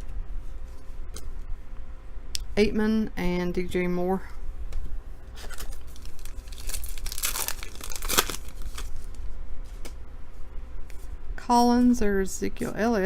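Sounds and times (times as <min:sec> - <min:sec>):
plastic wrapper tearing and crinkling: 0:05.4 - 0:09.2.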